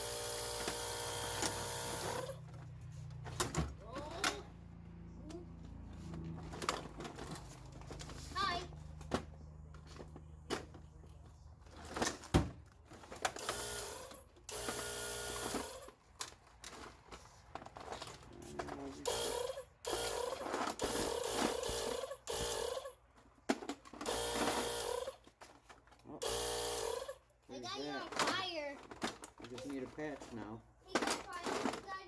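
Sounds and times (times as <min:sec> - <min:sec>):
air pump motor running: 0:00.0 - 0:02.4, 0:13.4 - 0:15.9, 0:19.0 - 0:22.8, 0:24.1 - 0:25.2, 0:26.2 - 0:27.2.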